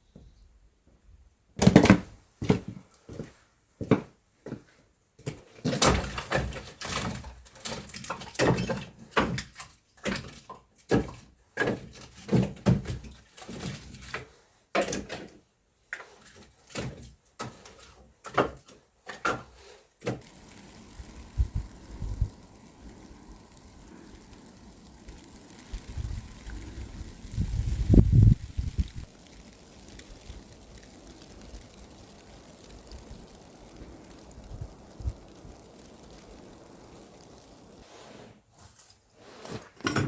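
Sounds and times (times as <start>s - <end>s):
steady low hiss: 18.9s - 40.0s.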